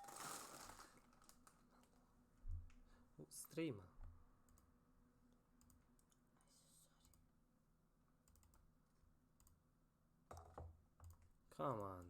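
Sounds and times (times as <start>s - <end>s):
computer clicks and taps: 8.2s - 8.7s, 10.3s - 12.0s.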